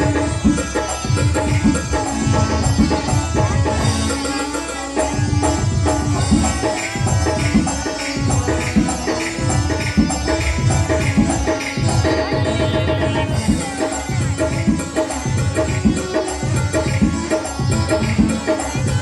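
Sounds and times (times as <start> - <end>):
loud music: 0.0 - 19.0.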